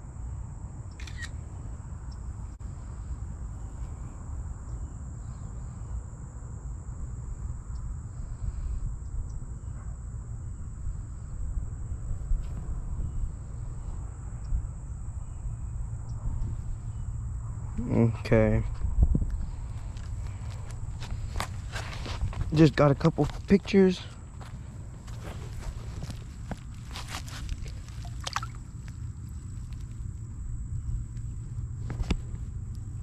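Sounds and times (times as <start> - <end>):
insects droning: 0.0 - 33.0
low rumble on microphone: 0.0 - 33.0
faint clicks and rustles: 19.3 - 33.0.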